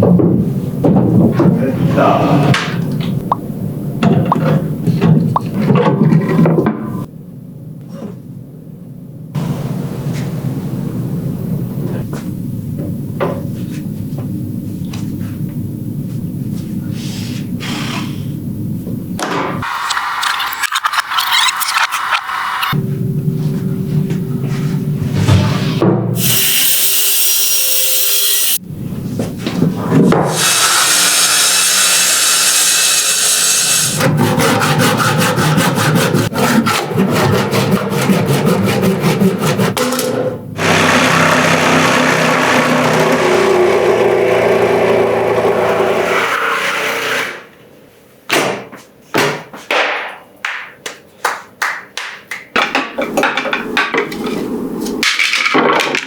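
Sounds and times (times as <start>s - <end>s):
tool working wood: 19.6s - 22.8s, 30.2s - 47.4s.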